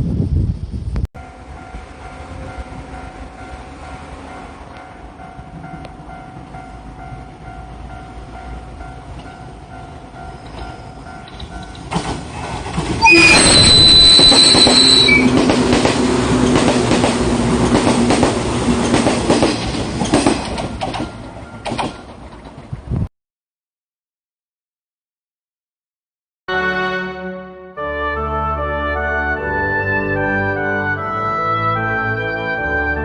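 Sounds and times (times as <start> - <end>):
train horn: 1.2 - 4.9, 13.0 - 16.4, 26.5 - 33.0
faint level-crossing bell: 1.2 - 11.8
train wheel noise: 1.2 - 23.0
wheels clicking over rail joints: 8.8 - 22.8.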